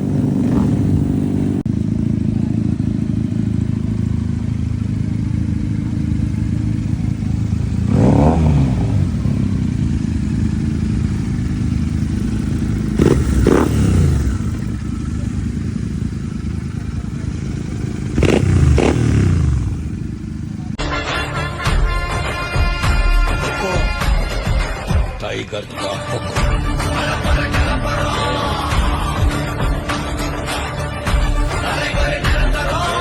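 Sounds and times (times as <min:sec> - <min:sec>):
engine revving: 0:00.0 - 0:20.8
motorcycle engine idling: 0:00.0 - 0:20.8, 0:24.0 - 0:33.0.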